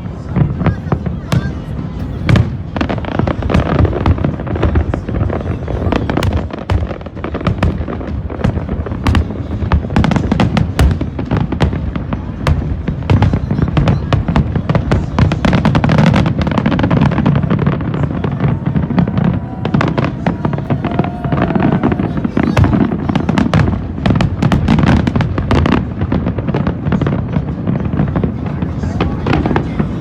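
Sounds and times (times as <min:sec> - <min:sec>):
fireworks bursting: 0:00.0 - 0:30.0.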